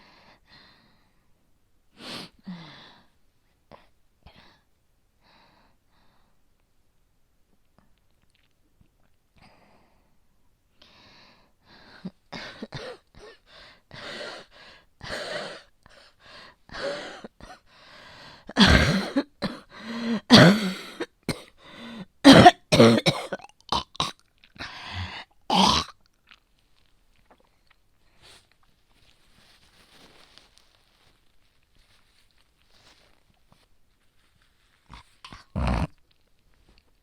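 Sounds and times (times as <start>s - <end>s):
woman coughing: 12.6s - 13.4s, 18.5s - 21.6s, 22.2s - 24.1s, 25.5s - 25.9s.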